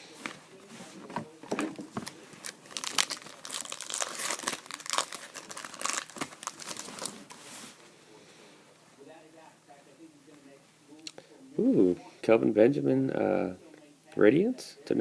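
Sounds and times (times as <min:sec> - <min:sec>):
wrapper crinkling and tearing: 0:02.0 - 0:07.4.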